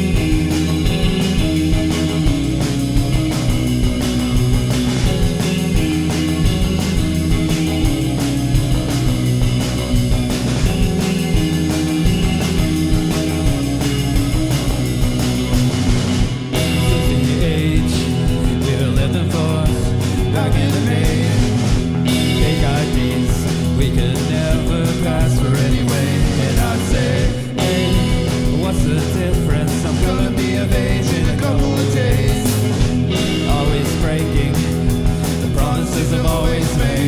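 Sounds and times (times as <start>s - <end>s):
rock band playing: 0.0s - 37.0s
person singing: 16.6s - 37.0s.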